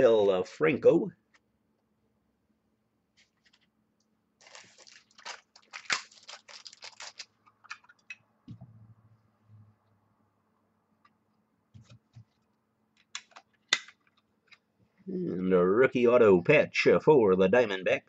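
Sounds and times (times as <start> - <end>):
wrapper crinkling: 4.4 - 8.1.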